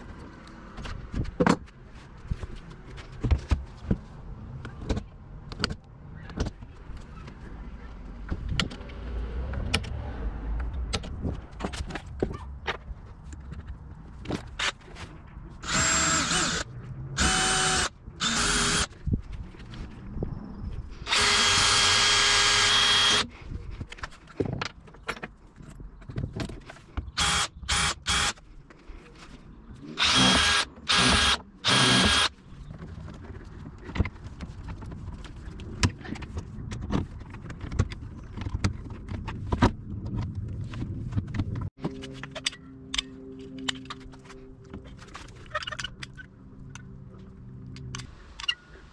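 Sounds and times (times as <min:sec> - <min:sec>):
power drill running: 0:15.6 - 0:16.6, 0:17.2 - 0:18.9, 0:21.1 - 0:23.2, 0:27.2 - 0:28.3, 0:30.0 - 0:32.3.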